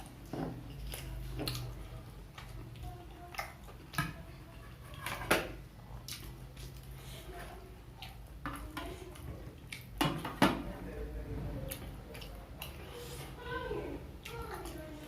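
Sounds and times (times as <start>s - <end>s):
chewing fried snacks: 0.0s - 10.0s, 11.6s - 13.4s.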